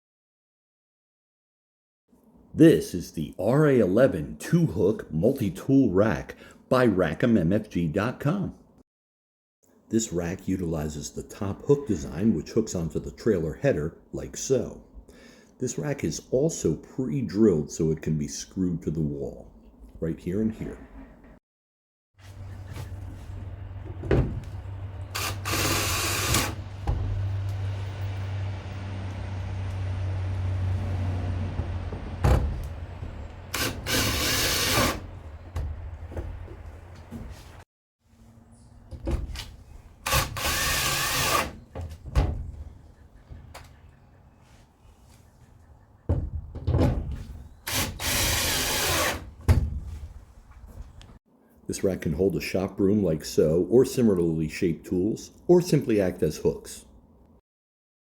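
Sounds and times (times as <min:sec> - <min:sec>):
wood scraping rub: 0:22.2 - 0:29.1
wood thumps: 0:23.8 - 0:24.6, 0:26.8 - 0:27.3, 0:31.5 - 0:34.0, 0:35.1 - 0:37.4, 0:46.1 - 0:47.4
power drill running: 0:25.0 - 0:26.8, 0:33.4 - 0:35.2, 0:40.0 - 0:41.5, 0:47.7 - 0:49.2.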